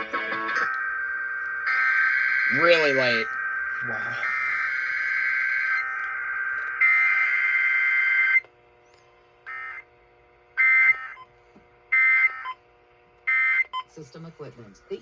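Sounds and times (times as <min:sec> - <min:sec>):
harsh buzzing data bursts: 0:00.0 - 0:08.5, 0:09.4 - 0:09.9, 0:10.5 - 0:11.2.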